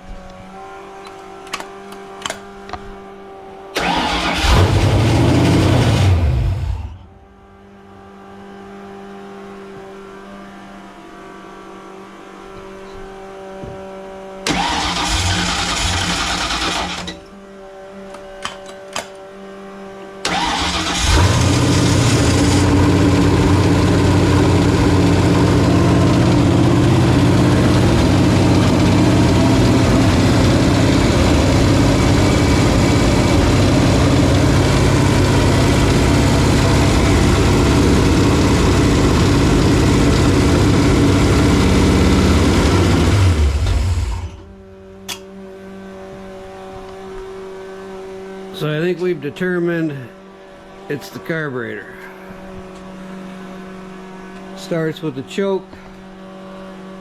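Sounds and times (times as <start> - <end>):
car engine cranking: 3.8 - 7.0, 14.4 - 17.3, 20.2 - 45.3
car engine running: 19.7 - 57.0.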